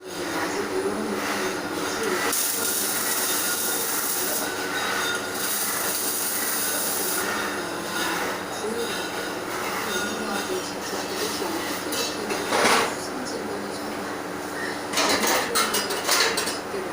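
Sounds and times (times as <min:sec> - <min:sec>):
welding arc crackling and hissing: 0:00.0 - 0:11.9.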